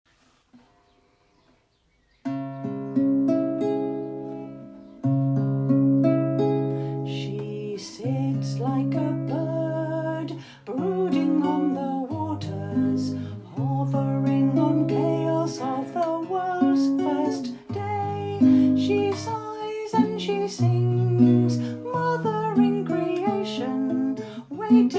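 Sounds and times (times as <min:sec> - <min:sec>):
acoustic guitar strumming: 0:02.3 - 0:24.9
woman singing: 0:07.1 - 0:24.9.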